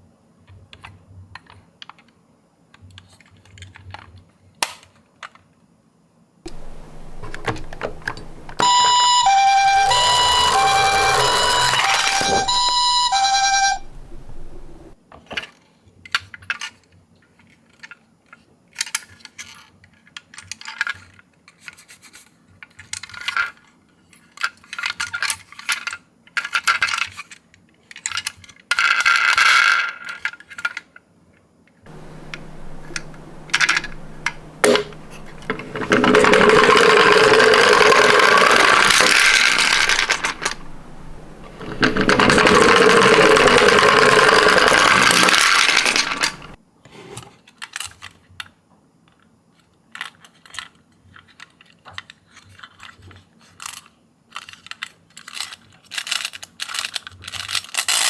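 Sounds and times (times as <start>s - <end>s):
metal toy cars rattling down slope: 6.5s - 15.0s, 31.9s - 46.6s
toy metal cars clinking: 6.5s - 15.0s, 31.9s - 46.6s.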